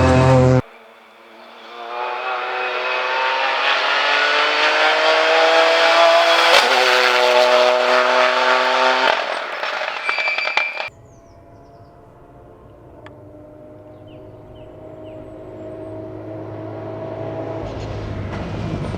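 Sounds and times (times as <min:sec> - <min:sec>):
rally car engine accelerating: 0:00.0 - 0:10.9, 0:11.6 - 0:18.9.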